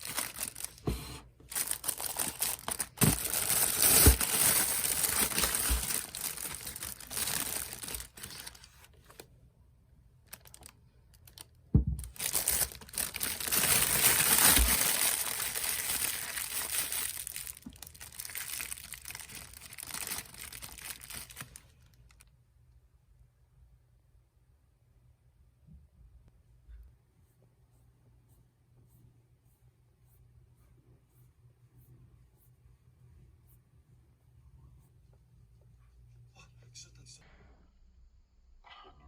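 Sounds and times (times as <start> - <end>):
crinkling and rustling: 0.0 - 9.3, 10.2 - 22.3.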